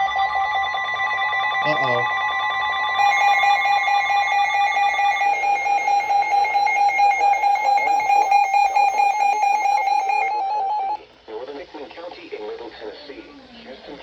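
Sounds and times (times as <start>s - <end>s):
pulsing electronic alert tones: 3.0s - 11.0s.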